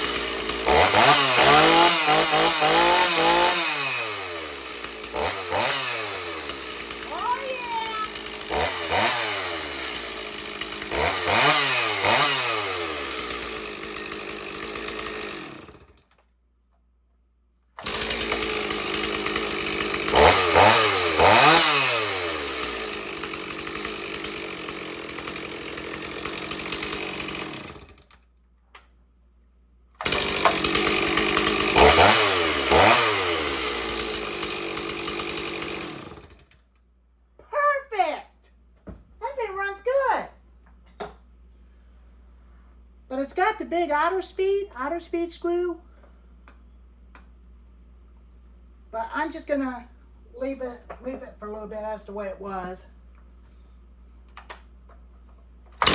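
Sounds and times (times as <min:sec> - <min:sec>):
chainsaw revving: 0:00.0 - 0:16.1, 0:17.8 - 0:28.2, 0:30.0 - 0:36.6.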